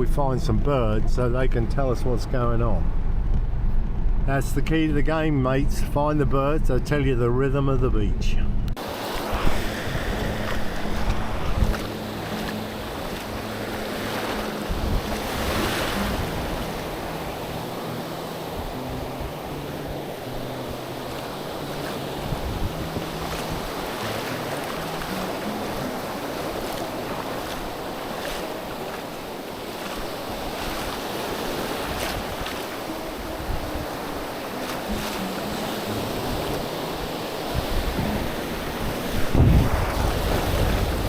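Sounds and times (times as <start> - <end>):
wind buffeting microphone: 8.4 - 41.0
surf washing onto beach: 8.8 - 41.0.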